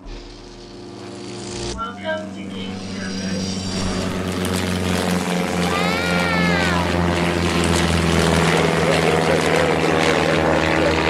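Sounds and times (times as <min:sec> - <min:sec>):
cartoon motor drone: 0:00.0 - 0:11.0
wavering tone: 0:01.6 - 0:07.8.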